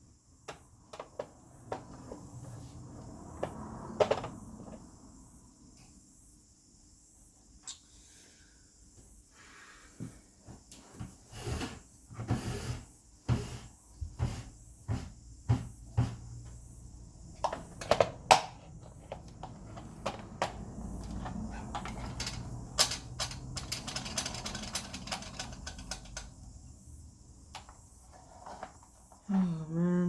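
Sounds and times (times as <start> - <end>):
projector parts knocking and rattling: 17.4 - 26.5.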